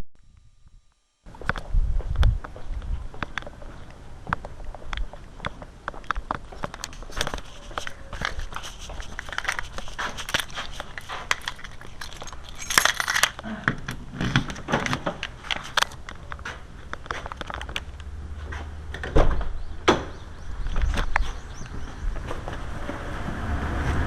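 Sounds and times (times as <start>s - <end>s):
keys jingling and clicking: 6.6s - 13.4s, 14.8s - 17.9s.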